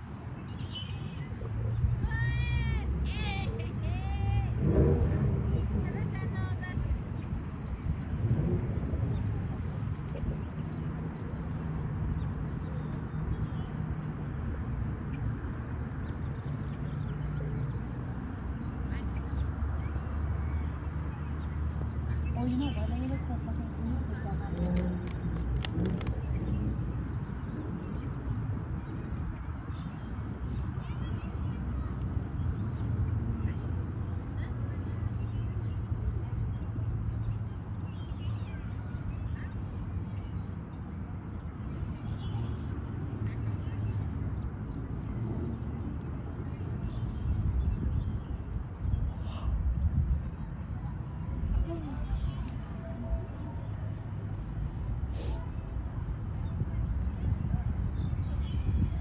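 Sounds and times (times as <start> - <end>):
small birds chirping: 0.0 - 4.0, 9.0 - 55.8
low rumble and hum: 0.0 - 31.0.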